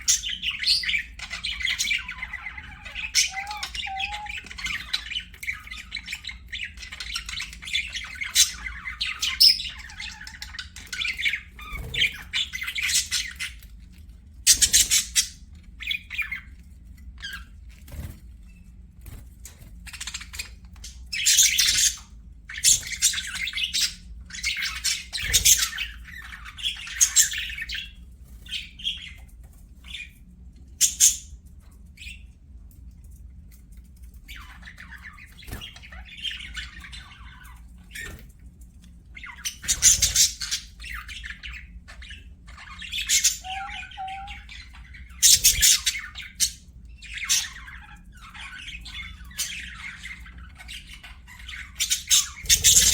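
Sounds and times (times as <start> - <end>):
budgerigars chattering and warbling: 0.0 - 13.7, 14.5 - 16.5, 19.9 - 29.2, 30.8 - 31.3, 34.2 - 38.3, 39.1 - 52.9
harsh bird squawks: 2.0 - 4.9, 43.0 - 46.0.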